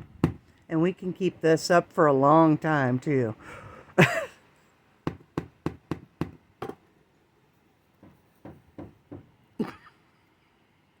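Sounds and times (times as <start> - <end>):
knocking on a wall: 5.0 - 6.8, 8.0 - 9.3.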